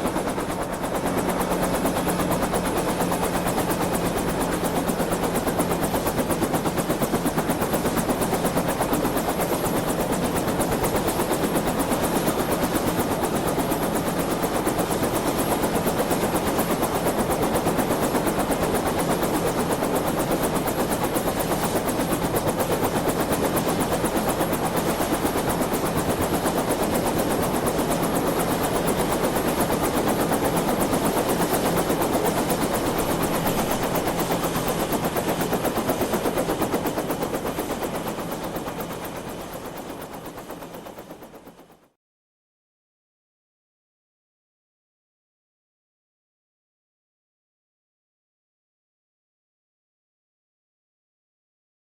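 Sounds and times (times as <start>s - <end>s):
helicopter rotor chopping: 0.0s - 41.2s.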